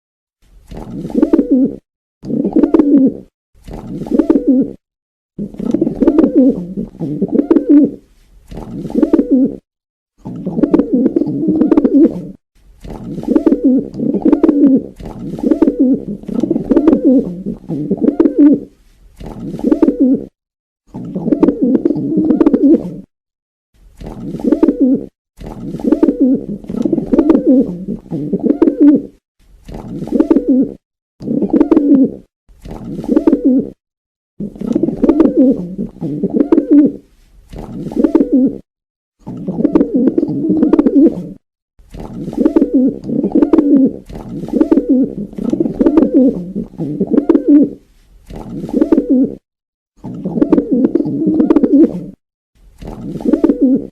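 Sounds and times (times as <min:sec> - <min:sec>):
pigeons cooing: 0:01.0 - 0:03.3, 0:04.0 - 0:04.8, 0:05.4 - 0:08.0, 0:08.8 - 0:09.6, 0:10.3 - 0:12.4, 0:13.1 - 0:18.7, 0:19.6 - 0:20.4, 0:21.1 - 0:23.0, 0:24.3 - 0:25.1, 0:25.8 - 0:29.2, 0:29.9 - 0:32.2, 0:32.9 - 0:33.8, 0:34.4 - 0:37.0, 0:37.8 - 0:38.6, 0:39.4 - 0:41.4, 0:42.2 - 0:47.8, 0:48.5 - 0:49.4, 0:50.2 - 0:52.2, 0:53.1 - 0:53.9.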